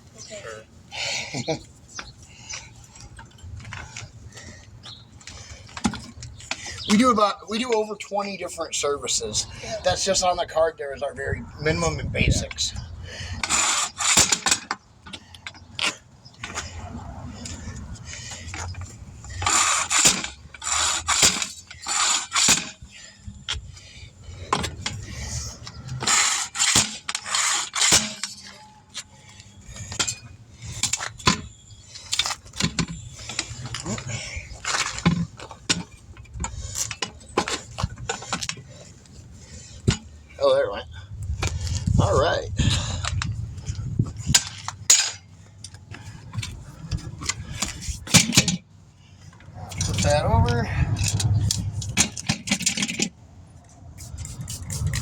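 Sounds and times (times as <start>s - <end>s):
metal tools clinking on wheel rim: 17.4s - 40.4s, 42.7s - 53.1s
short rushing scrape: 54.0s - 55.0s.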